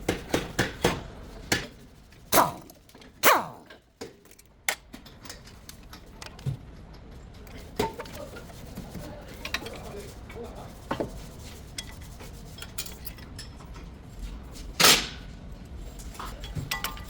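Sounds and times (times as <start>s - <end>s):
falling pitch metallic sounds: 3.2s - 3.7s.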